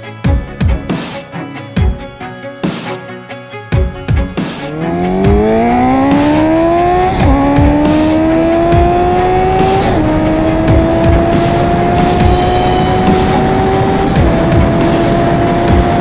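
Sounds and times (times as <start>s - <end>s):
music with steady beat: 0.0s - 16.0s
motorcycle engine accelerating: 4.4s - 16.0s.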